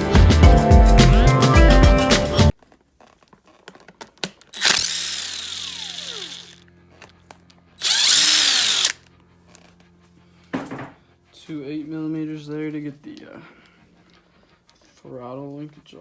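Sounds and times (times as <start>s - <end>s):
power drill running: 4.6s - 6.6s, 7.8s - 9.0s.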